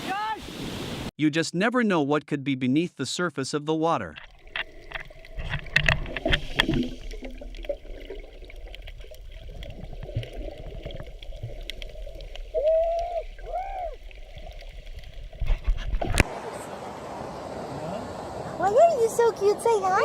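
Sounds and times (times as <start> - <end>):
water sloshing and gurgling: 4.2 - 16.3.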